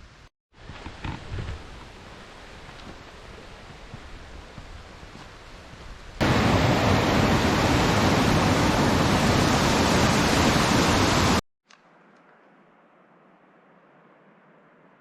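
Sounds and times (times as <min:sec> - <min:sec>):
loud steady rushing noise: 0:06.2 - 0:11.4.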